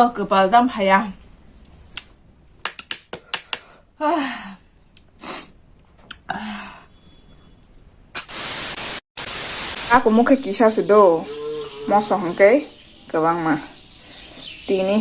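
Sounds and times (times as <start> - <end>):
loud steady hiss: 8.2 - 10.4.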